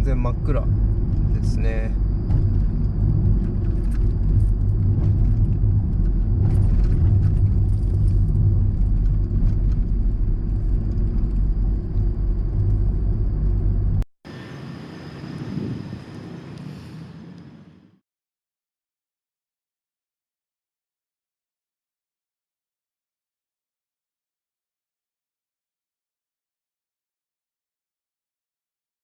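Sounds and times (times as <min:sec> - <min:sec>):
car road and engine rumble: 0:00.0 - 0:18.0.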